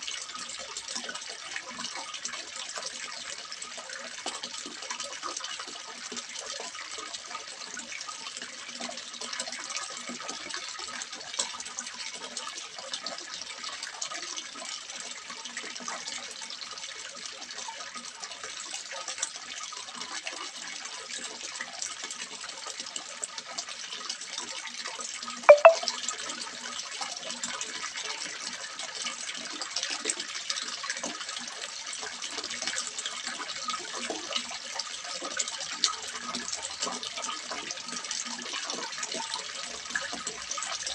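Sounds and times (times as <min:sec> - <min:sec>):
brief sharp sound: 0:25.5 - 0:25.9
water splashing into pond: 0:25.5 - 0:25.9.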